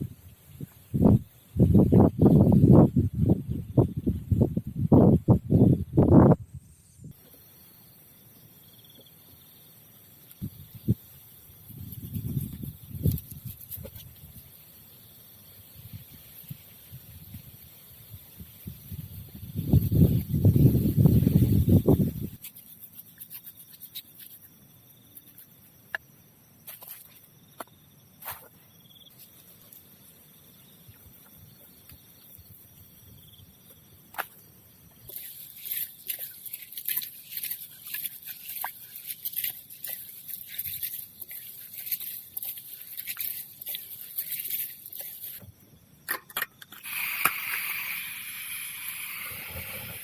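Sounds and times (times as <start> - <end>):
steady rushing hiss: 6.5 - 26.6, 46.7 - 50.0.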